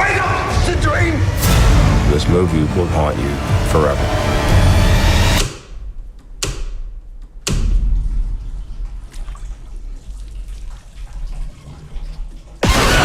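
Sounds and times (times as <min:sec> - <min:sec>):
low rumbling drone: 0:01.2 - 0:06.0.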